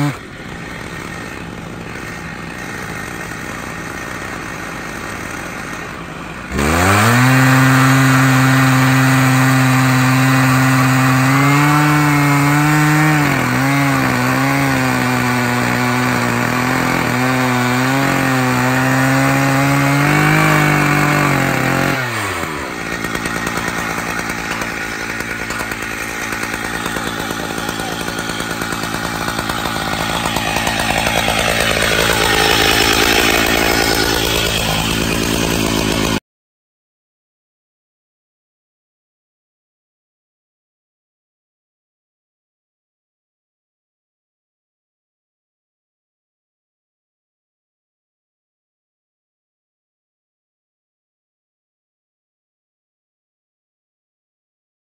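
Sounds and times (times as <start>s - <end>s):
chainsaw cutting log: 0.0s - 36.2s.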